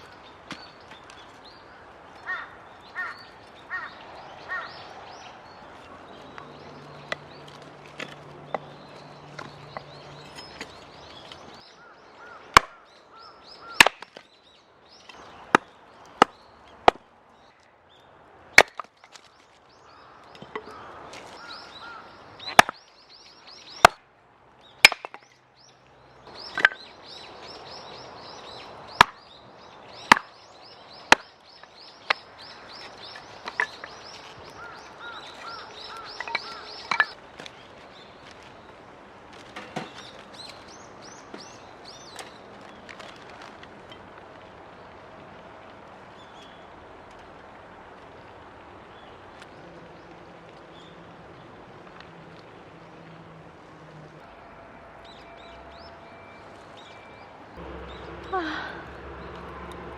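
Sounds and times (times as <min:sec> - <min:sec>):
small birds chirping: 0:00.0 - 0:18.2, 0:19.0 - 0:23.9, 0:24.5 - 0:45.2, 0:54.0 - 0:59.9
firewood being chopped: 0:00.4 - 0:01.4, 0:06.3 - 0:11.6, 0:12.3 - 0:12.8, 0:13.6 - 0:14.3, 0:15.0 - 0:17.1, 0:18.5 - 0:19.4, 0:20.3 - 0:22.8, 0:23.6 - 0:24.0, 0:24.8 - 0:25.4, 0:26.3 - 0:26.8, 0:28.9 - 0:29.2, 0:30.0 - 0:37.6, 0:39.3 - 0:44.0.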